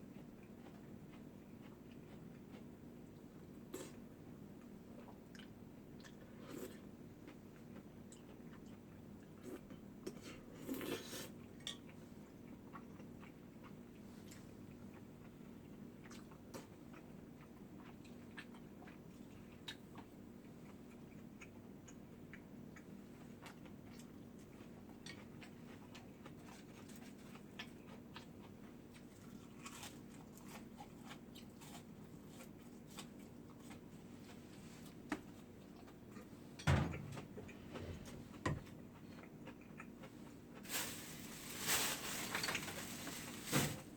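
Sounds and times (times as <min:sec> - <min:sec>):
chewing and biting food: 0:00.0 - 0:04.0, 0:04.6 - 0:36.3
steady low hum: 0:33.2 - 0:42.3.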